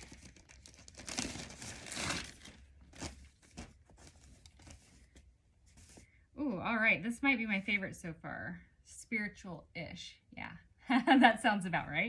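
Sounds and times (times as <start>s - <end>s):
packaging crinkling and tearing: 0.0s - 4.8s.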